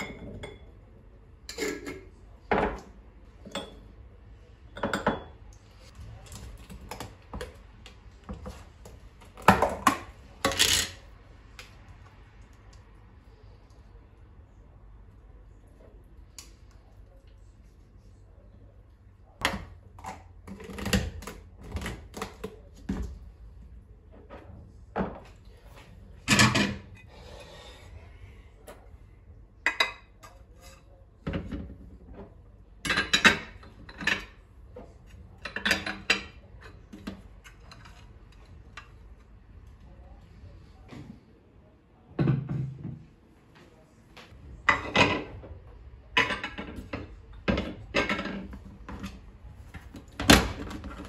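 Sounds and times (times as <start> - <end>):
dishes and cutlery clinking: 1.5 - 3.9, 9.4 - 11.0, 46.2 - 49.2.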